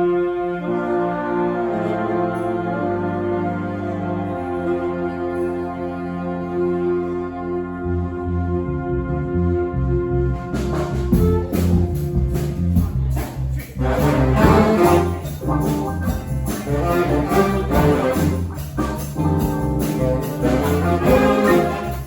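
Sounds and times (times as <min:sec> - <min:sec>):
brass band playing: 0:00.0 - 0:22.0
drum and percussion beat: 0:10.6 - 0:22.0.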